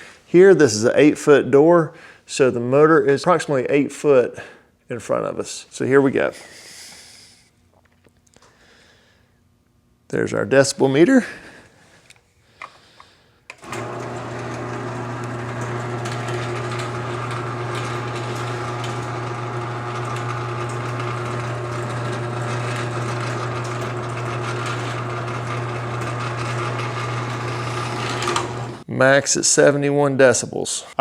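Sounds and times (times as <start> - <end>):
garage door opener motor humming: 13.5 - 28.8.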